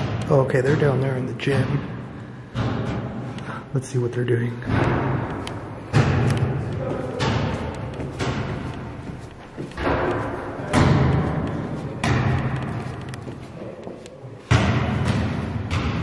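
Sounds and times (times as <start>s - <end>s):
basketball bouncing with echo: 0.0s - 3.6s, 4.5s - 16.0s.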